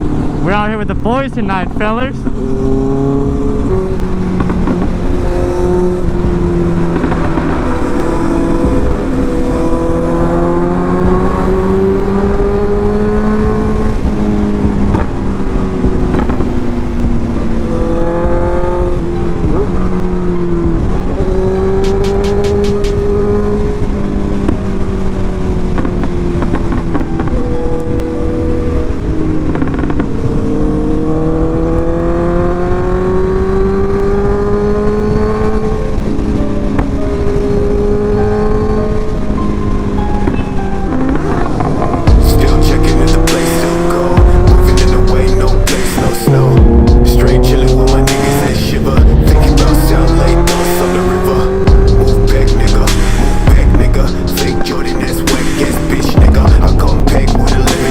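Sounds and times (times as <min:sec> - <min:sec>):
wind and road noise: 0:00.0 - 0:57.9
motorcycle engine running: 0:42.0 - 0:54.3, 0:56.1 - 0:57.9.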